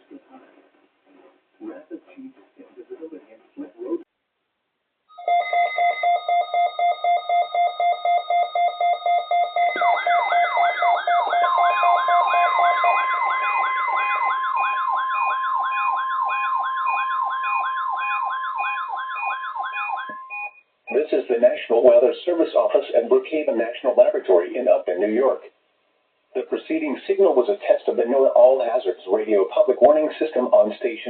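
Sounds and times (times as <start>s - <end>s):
warbling siren-like alarm: 5.1s - 21.1s
steady high alarm tone: 5.1s - 21.7s
pulsing electronic beep tone: 5.2s - 21.1s.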